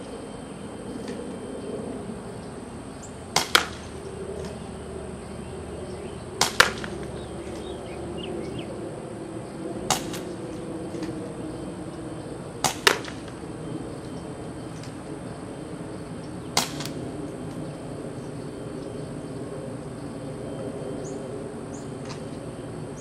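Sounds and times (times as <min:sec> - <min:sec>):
airsoft revolver shots: 0:03.3 - 0:04.0, 0:06.4 - 0:07.1, 0:09.9 - 0:10.4, 0:12.6 - 0:13.4, 0:16.6 - 0:17.0.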